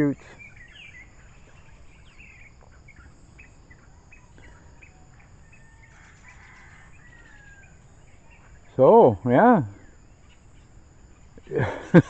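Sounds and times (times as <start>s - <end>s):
small birds chirping: 0.0s - 12.0s
steady high-pitched whine: 0.0s - 12.0s.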